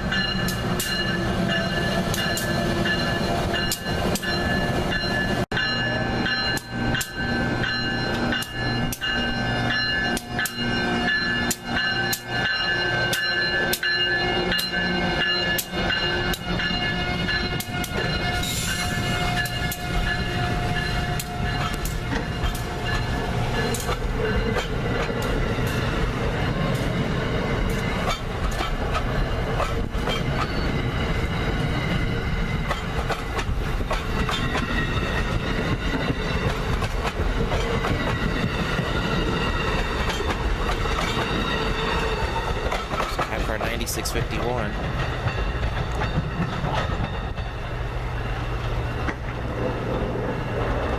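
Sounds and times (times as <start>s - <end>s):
wheels clicking over rail joints: 0.0s - 43.8s
train rumbling by: 0.0s - 50.9s.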